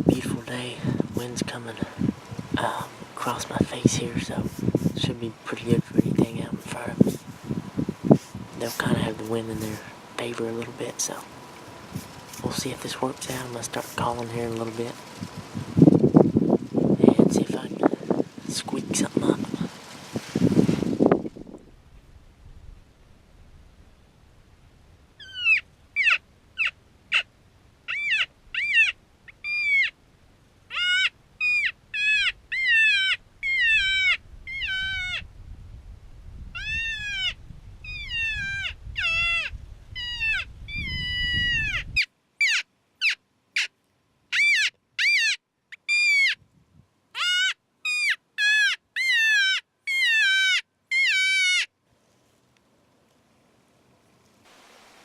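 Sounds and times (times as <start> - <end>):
predator call distress cries: 25.2 - 27.3, 27.9 - 30.0, 30.7 - 35.2, 36.6 - 43.7, 44.3 - 46.4, 47.1 - 51.7.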